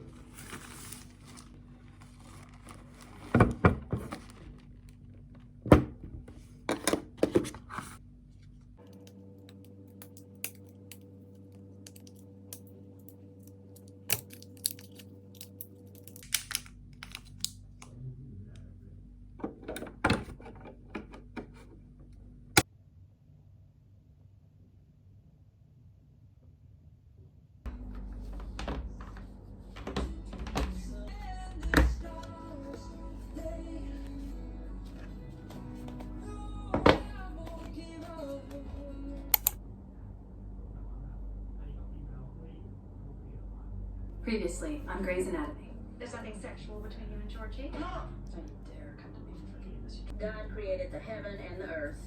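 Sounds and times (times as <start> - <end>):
objects being handled: 0.0 - 17.9
steady low hum: 0.0 - 25.2, 27.6 - 52.0.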